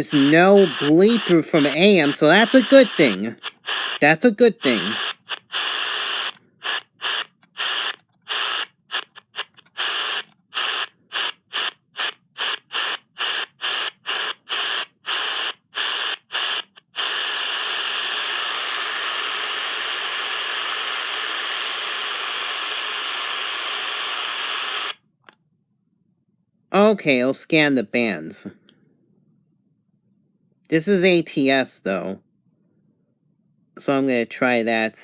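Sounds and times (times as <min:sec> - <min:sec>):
radio static hiss: 0:00.0 - 0:25.0.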